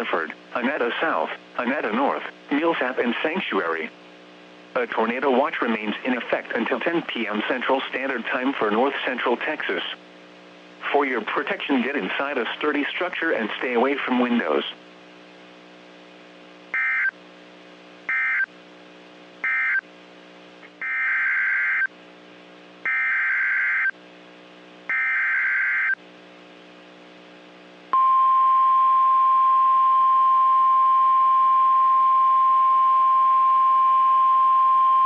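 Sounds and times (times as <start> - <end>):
steady warning alarm tone: 16.8 - 17.1, 18.1 - 18.5, 19.4 - 19.8, 20.8 - 21.9, 22.9 - 23.9, 24.9 - 26.0.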